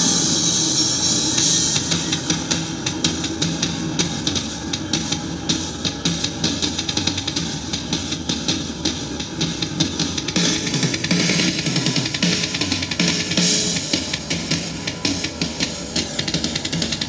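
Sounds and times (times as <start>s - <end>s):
cymbal wash: 0.0s - 17.0s
drum-led rock music: 0.0s - 17.0s
rapid drum strokes: 0.0s - 17.0s.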